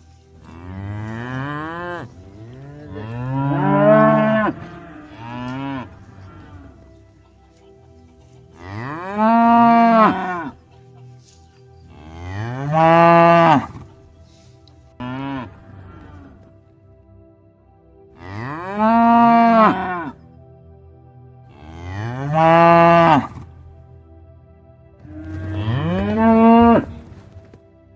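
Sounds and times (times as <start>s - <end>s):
cattle mooing: 0.4s - 7.0s, 8.6s - 10.6s, 11.9s - 13.9s, 15.0s - 16.5s, 18.2s - 20.2s, 21.5s - 23.5s, 25.0s - 27.1s.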